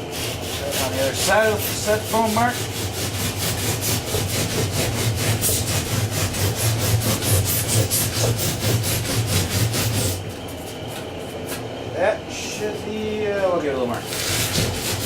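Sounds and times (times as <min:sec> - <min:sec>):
hand saw cutting foam board: 0:00.0 - 0:10.4, 0:14.0 - 0:15.0.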